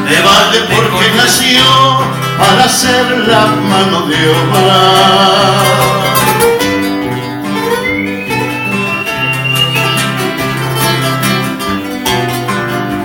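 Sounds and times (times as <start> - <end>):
people singing folk song: 0.0 - 11.2
acoustic guitars playing: 0.0 - 13.0.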